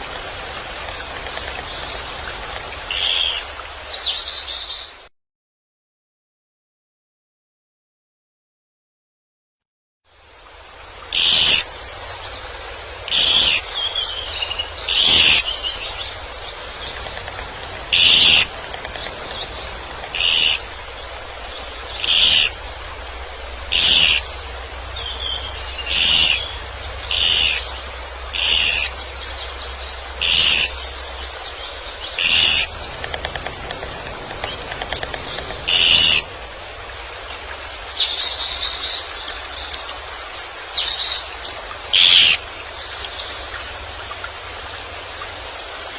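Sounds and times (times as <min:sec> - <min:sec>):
woodpecker calling: 0:02.9 - 0:03.4, 0:11.1 - 0:11.7, 0:13.0 - 0:22.7, 0:23.6 - 0:36.4, 0:39.6 - 0:42.4
soft bird chattering: 0:11.1 - 0:11.6, 0:13.1 - 0:20.7, 0:21.8 - 0:22.6, 0:23.7 - 0:24.3, 0:25.0 - 0:27.7, 0:28.4 - 0:29.6, 0:30.2 - 0:30.8, 0:32.1 - 0:36.3, 0:42.0 - 0:42.4.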